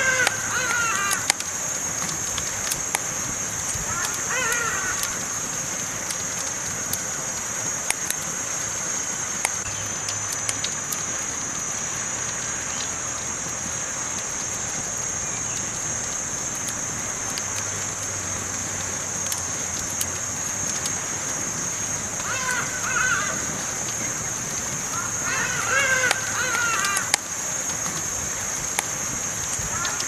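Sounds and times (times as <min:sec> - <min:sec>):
campfire crackling and popping: 0:00.0 - 0:30.0
high-pitched steady hiss: 0:00.0 - 0:30.0.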